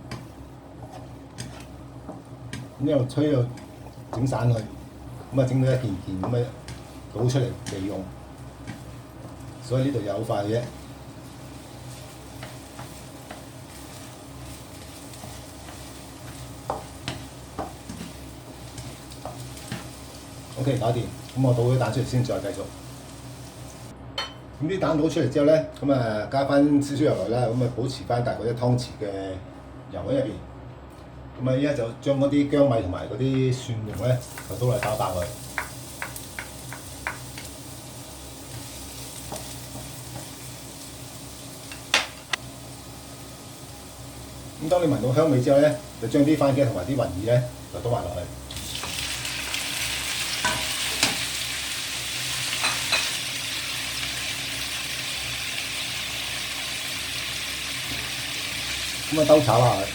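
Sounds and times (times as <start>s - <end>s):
spatula scraping and tapping wok: 0.0s - 2.8s, 6.1s - 9.5s, 10.6s - 20.1s, 34.3s - 37.6s, 38.5s - 40.6s, 50.4s - 51.3s
eggs sizzling in oil: 0.0s - 23.9s, 34.0s - 59.9s.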